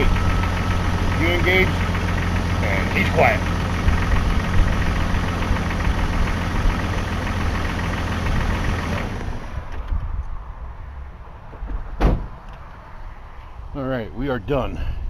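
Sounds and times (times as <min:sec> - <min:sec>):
car engine idling: 0:00.0 - 0:09.7.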